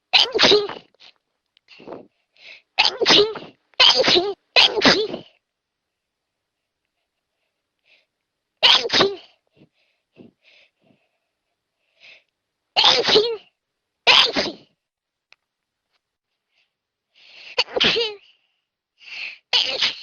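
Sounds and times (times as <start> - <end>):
person sneezing: 0.2 - 5.4, 8.6 - 10.4, 12.8 - 13.5, 14.1 - 14.7, 17.3 - 18.3, 19.1 - 20.0
sniffs and breaths: 0.7 - 3.6, 6.6 - 8.2, 9.3 - 12.3, 16.3 - 17.6, 18.2 - 19.5.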